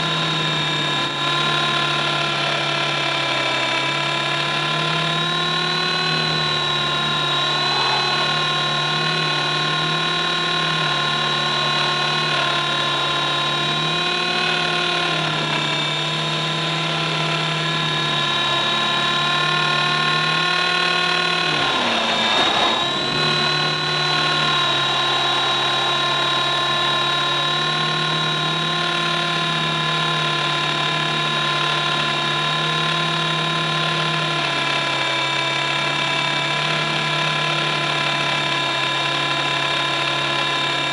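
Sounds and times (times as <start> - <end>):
rc helicopter motor whine: 0.0 - 40.9.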